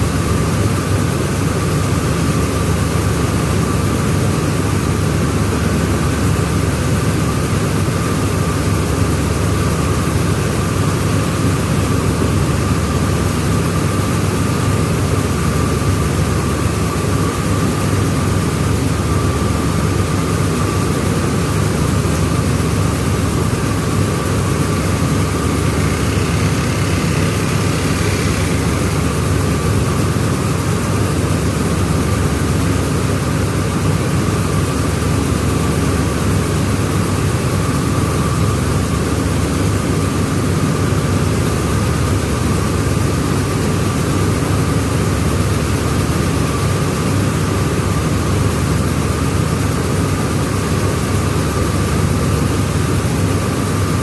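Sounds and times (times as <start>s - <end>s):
high mechanical whine: 20.6s - 31.8s
milling machine drone: 21.8s - 31.4s.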